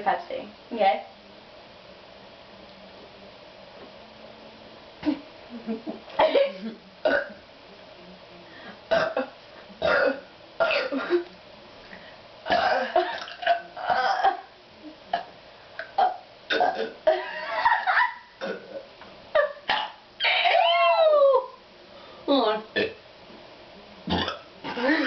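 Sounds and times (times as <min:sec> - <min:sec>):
person burping: 0:08.9 - 0:11.0, 0:12.5 - 0:14.4, 0:15.1 - 0:17.2, 0:18.4 - 0:18.8, 0:22.8 - 0:23.0, 0:24.1 - 0:24.8.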